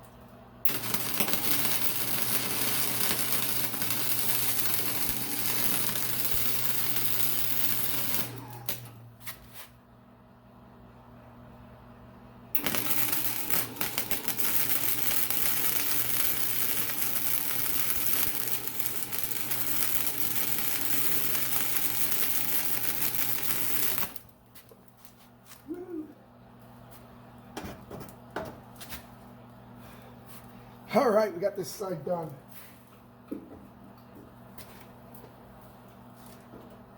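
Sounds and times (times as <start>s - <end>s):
low welder hum: 0.0s - 36.9s
welder arc crackling: 0.6s - 9.0s, 12.6s - 24.7s.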